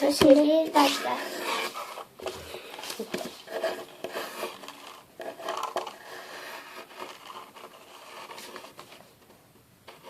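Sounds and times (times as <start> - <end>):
drawing tool scratching paper: 0.6 - 2.0, 3.4 - 8.8.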